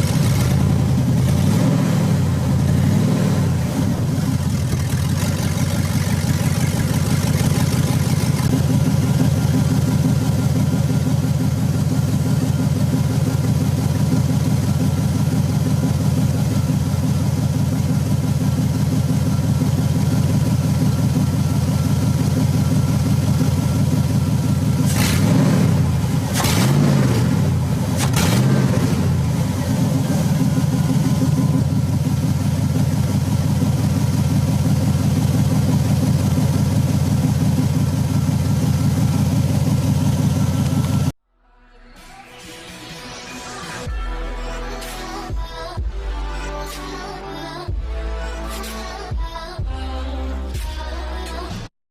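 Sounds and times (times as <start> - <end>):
car engine idling and revving: 0.0 - 41.2.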